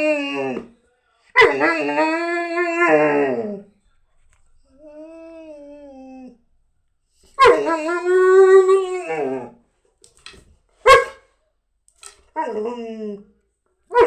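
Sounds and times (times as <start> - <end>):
dog yelping: 7.4 - 8.0.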